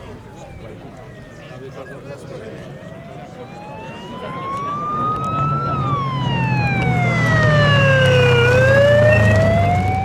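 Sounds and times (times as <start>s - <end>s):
wailing siren: 0.0s - 10.0s
vehicle engine: 3.9s - 10.0s.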